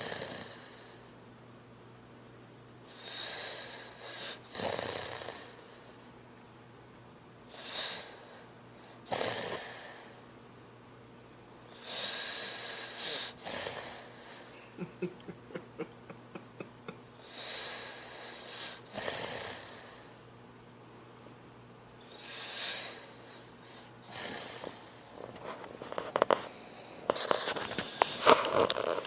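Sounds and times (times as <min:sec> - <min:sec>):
boy snoring: 0:00.0 - 0:00.9, 0:03.0 - 0:05.6, 0:07.5 - 0:08.2, 0:09.1 - 0:10.1, 0:11.8 - 0:14.5, 0:17.2 - 0:20.1, 0:24.1 - 0:24.9.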